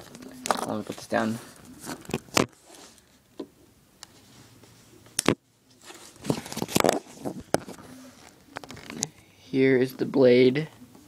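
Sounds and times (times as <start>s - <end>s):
packaging rustling: 5.8s - 9.1s.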